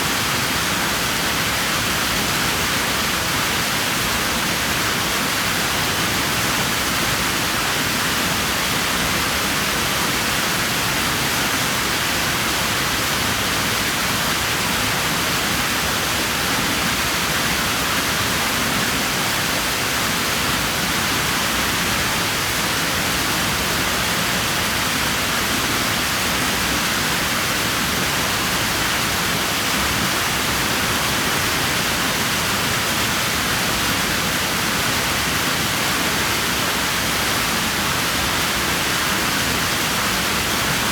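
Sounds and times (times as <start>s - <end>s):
rushing pool water: 0.0s - 40.9s.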